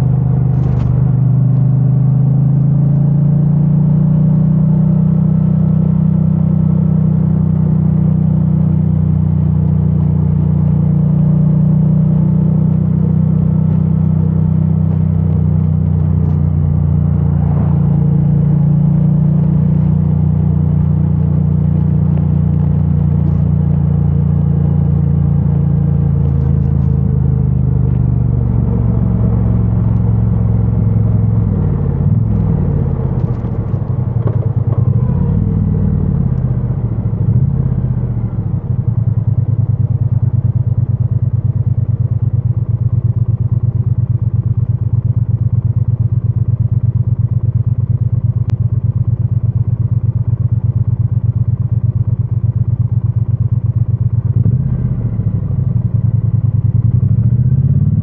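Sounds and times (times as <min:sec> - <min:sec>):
motorcycle engine revving: 0:12.1 - 0:48.6, 0:49.5 - 0:58.0.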